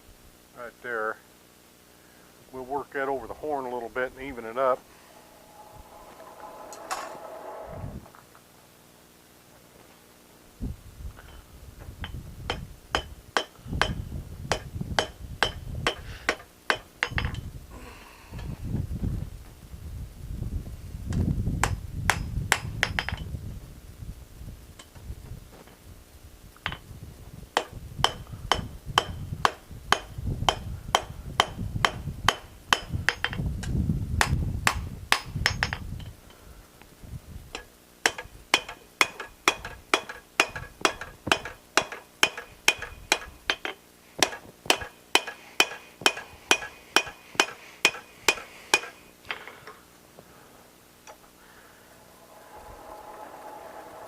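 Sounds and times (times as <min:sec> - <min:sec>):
low rumble: 0:04.8 - 0:08.6, 0:51.5 - 0:54.0
hammer striking steel on anvil: 0:12.5 - 0:17.4, 0:27.6 - 0:33.4, 0:34.2 - 0:35.8, 0:37.6 - 0:49.0.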